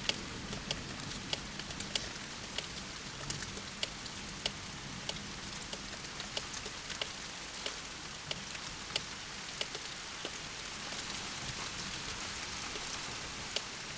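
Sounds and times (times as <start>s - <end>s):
rain falling: 0.0s - 13.9s.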